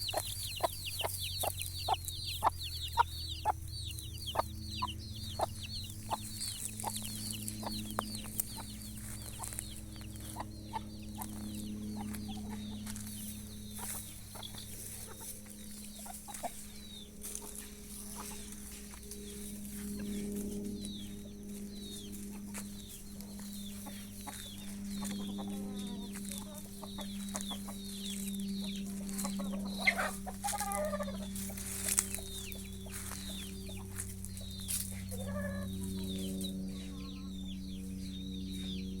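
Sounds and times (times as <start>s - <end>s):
chickens clucking: 0.0s - 39.0s
chicks peeping: 0.0s - 39.0s
low hum: 0.0s - 39.0s.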